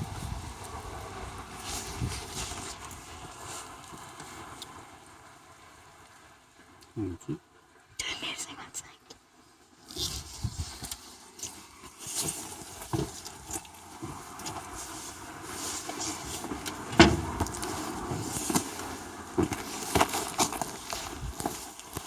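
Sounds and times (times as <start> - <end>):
irregular clunks and rattles: 16.7 - 17.7.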